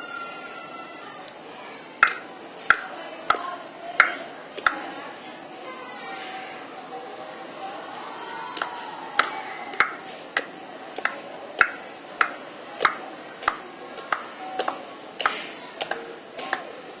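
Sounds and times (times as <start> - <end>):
slime clicking and popping: 2.0 - 4.8, 8.5 - 16.7.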